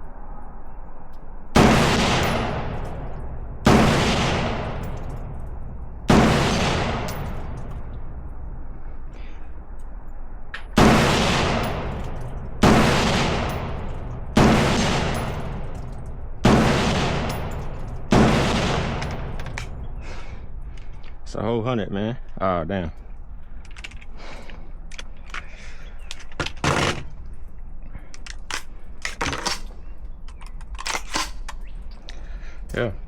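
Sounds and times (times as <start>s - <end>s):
gunshots with echo: 1.6s - 8.4s, 10.7s - 20.7s.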